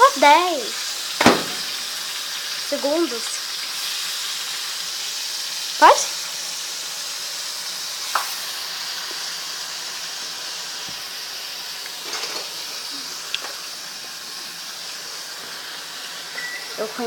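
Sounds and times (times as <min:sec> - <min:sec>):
hot fat sizzling: 0:00.0 - 0:17.0.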